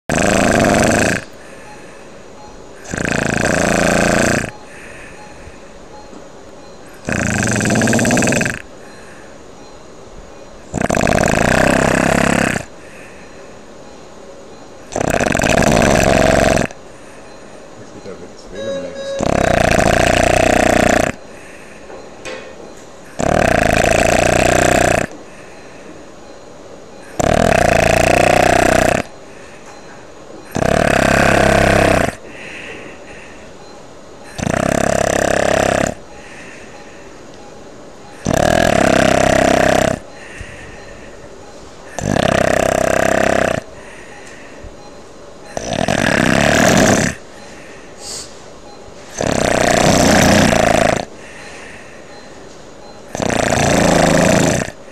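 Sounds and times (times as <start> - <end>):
person snoring loudly: 0.1 - 1.4, 2.8 - 4.6, 6.9 - 8.7, 10.7 - 12.8, 14.9 - 16.8, 19.2 - 21.2, 23.1 - 25.2, 27.1 - 29.1, 30.5 - 32.2, 34.3 - 36.1, 38.2 - 40.3, 41.9 - 43.7, 45.5 - 47.2, 49.1 - 51.1, 53.1 - 54.9
soft breath: 1.3 - 2.5, 4.5 - 5.8, 12.8 - 13.8, 25.2 - 26.2, 32.2 - 33.8, 36.1 - 37.3, 40.1 - 41.7, 43.7 - 45.0, 47.3 - 48.6, 51.2 - 52.6.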